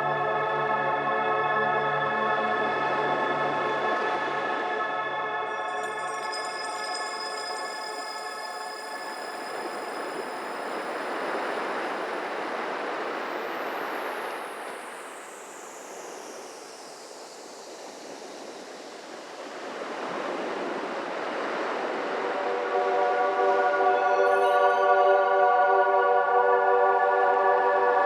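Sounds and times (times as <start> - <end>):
ambient synth noise wash: 0.0 - 28.0.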